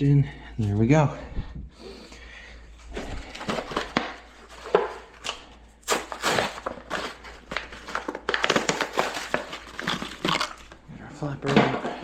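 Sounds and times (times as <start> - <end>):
plastic parts clicking and knocking: 7.5 - 10.8.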